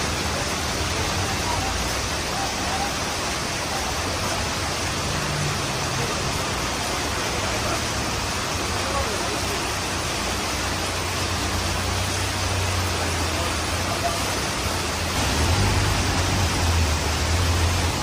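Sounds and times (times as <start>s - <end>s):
heavy rain hissing: 0.0s - 18.0s.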